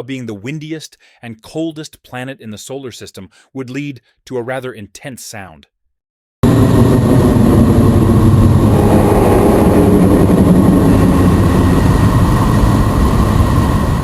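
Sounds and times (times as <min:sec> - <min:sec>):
dense low rumble with hiss: 0:06.4 - 0:13.5.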